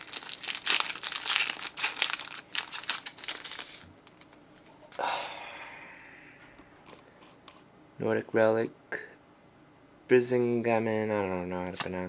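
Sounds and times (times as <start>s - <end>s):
foil wrapper crinkling: 0.0s - 4.8s.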